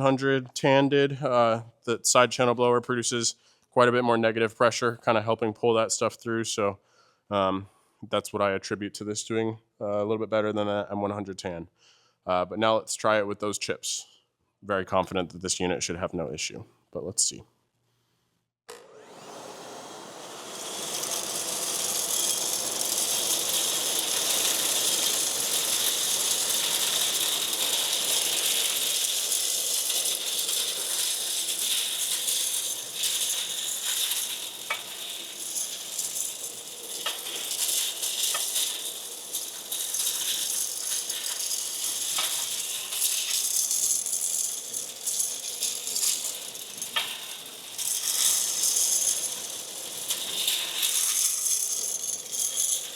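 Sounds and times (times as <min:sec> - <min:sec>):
industrial vacuum running: 0:18.8 - 0:51.0
metal chips rattling through hose: 0:20.5 - 0:52.9.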